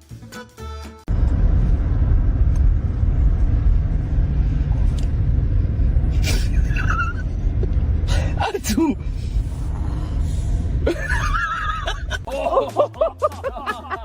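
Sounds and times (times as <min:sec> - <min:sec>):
loud low rumble: 0:01.1 - 0:12.3.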